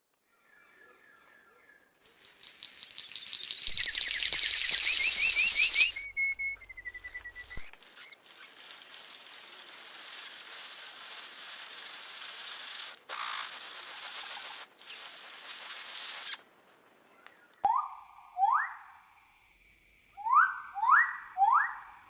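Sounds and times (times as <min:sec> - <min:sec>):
songbird singing: 0:00.1 - 0:08.7, 0:17.0 - 0:19.0, 0:20.2 - 0:22.0
soft chirps: 0:00.4 - 0:16.4
faint steady hiss: 0:01.5 - 0:22.0.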